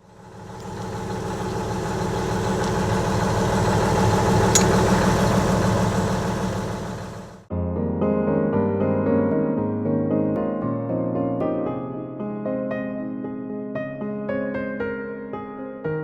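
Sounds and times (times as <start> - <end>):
diesel engine running: 0.0 - 7.5.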